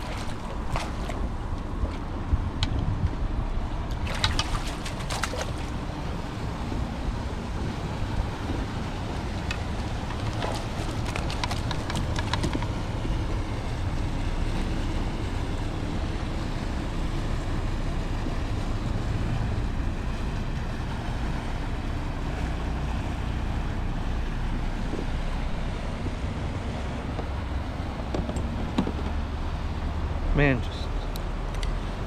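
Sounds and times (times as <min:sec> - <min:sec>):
water sounds: 0:00.0 - 0:02.6, 0:03.3 - 0:32.0
wind on microphone: 0:00.0 - 0:13.4, 0:19.4 - 0:30.1.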